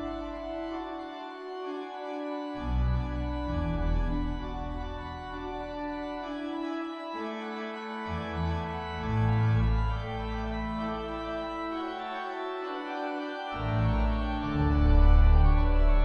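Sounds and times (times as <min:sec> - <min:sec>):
deep organ pedal notes: 0:00.0 - 0:16.0
organ chords: 0:00.0 - 0:16.0.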